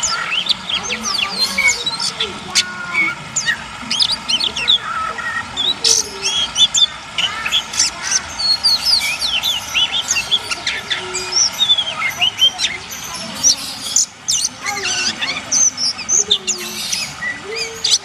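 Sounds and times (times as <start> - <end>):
songbirds singing: 0.0 - 18.0
trickling water: 0.0 - 18.0.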